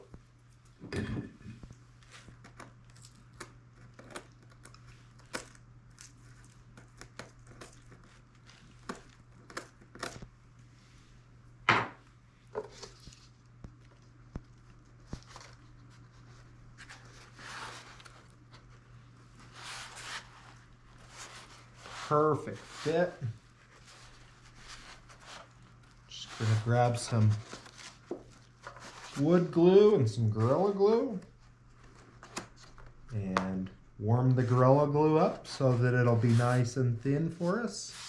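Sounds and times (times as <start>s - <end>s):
soft rubbing: 15.0s - 30.7s.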